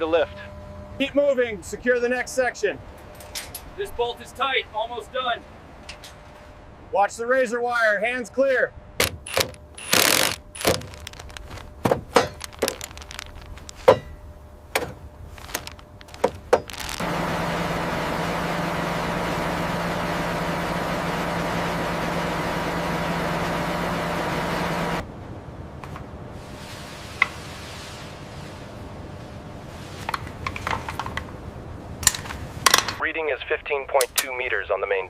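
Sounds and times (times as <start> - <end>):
machine humming: 9.0 - 25.0
metallic knocks and clanks: 11.8 - 12.6, 13.8 - 15.0.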